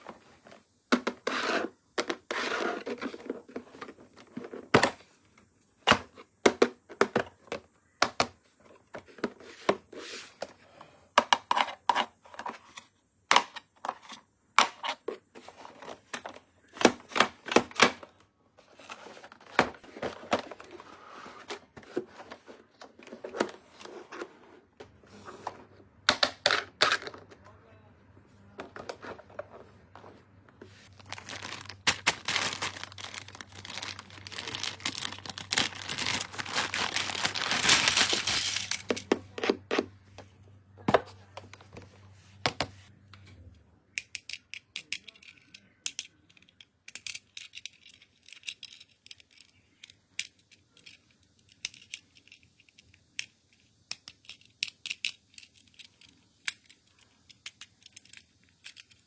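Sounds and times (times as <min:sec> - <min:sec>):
packaging tearing and crinkling: 0:30.9 - 0:39.0
small toys clicking and tapping: 0:44.0 - 0:59.0.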